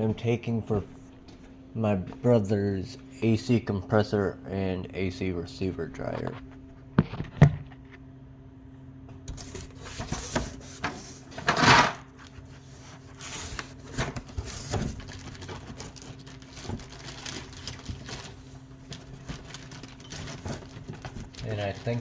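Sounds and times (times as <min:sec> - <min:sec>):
tool bag rustling: 0:13.0 - 0:22.0.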